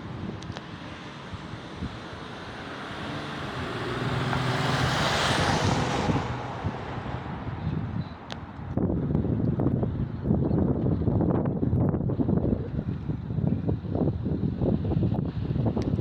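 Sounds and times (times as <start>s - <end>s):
vehicle driving past: 1.0s - 7.6s.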